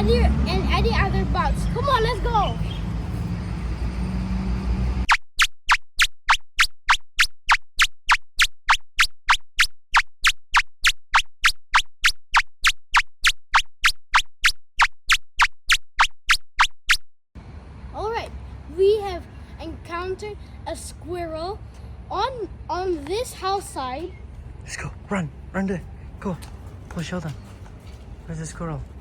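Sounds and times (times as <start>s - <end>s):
outdoor background rumble: 0.0s - 5.1s, 17.4s - 29.0s.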